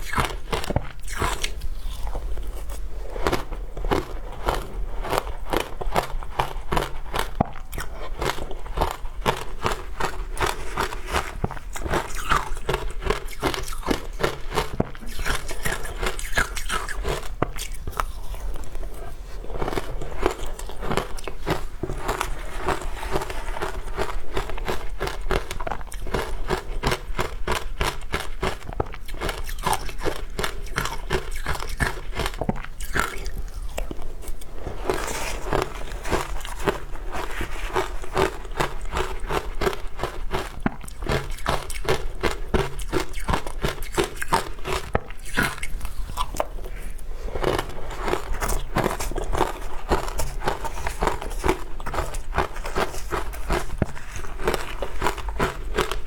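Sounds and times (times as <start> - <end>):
crunching and biting frozen ice: 0.0 - 56.0.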